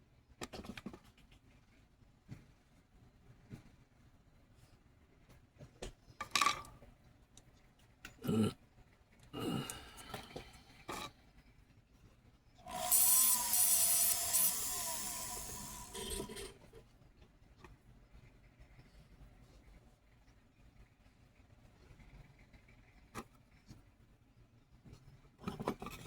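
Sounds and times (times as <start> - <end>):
tool rasping on workpiece: 12.6 - 16.5.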